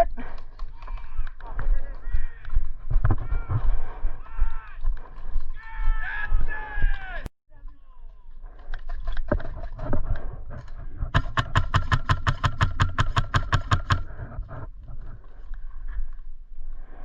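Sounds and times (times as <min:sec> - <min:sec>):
airsoft rifle rapid firing: 0:11.2 - 0:14.1.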